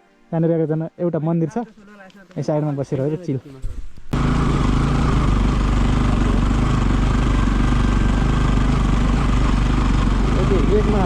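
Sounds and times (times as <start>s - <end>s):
motorcycle engine running: 4.2s - 11.0s.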